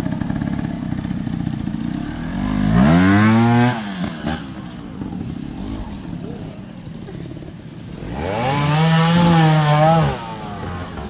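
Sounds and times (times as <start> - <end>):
motorcycle engine revving: 0.0 - 11.0.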